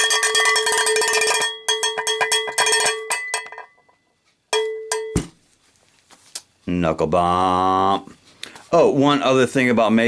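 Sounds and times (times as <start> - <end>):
cowbell strikes: 0.0 - 5.3.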